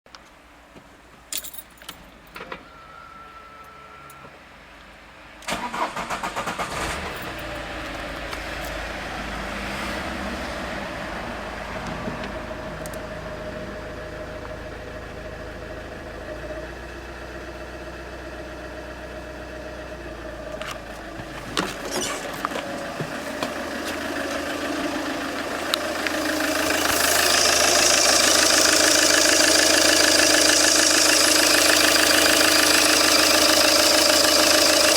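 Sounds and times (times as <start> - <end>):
diesel engine starting and idling: 5.4 - 34.9
high-pitched hissing: 25.6 - 30.0.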